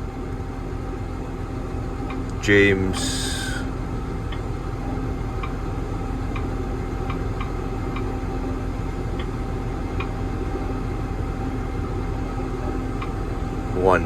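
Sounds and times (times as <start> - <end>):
engine idling hum: 0.0 - 14.0.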